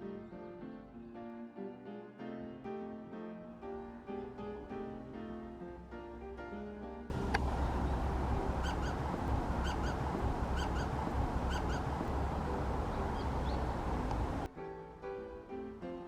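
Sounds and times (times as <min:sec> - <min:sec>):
low outdoor rumble: 0:07.1 - 0:14.5
small bird calling paired notes: 0:07.1 - 0:14.5.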